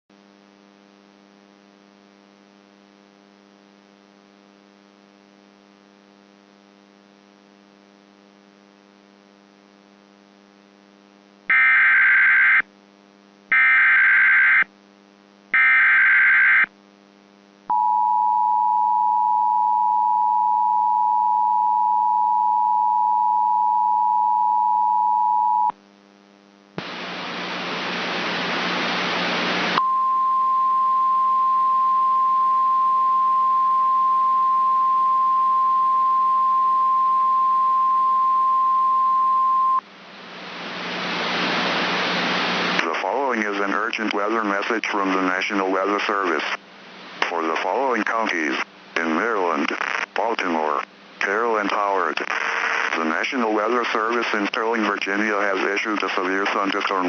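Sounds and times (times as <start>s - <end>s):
faint buzzing hum: 0.1s - 57.0s
static hiss: 25.9s - 29.8s, 39.9s - 57.0s.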